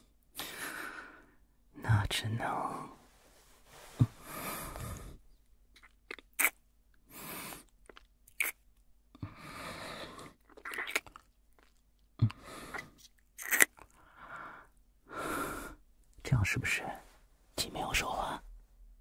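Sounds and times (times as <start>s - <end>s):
wet lip smacks: 5.8s - 6.6s.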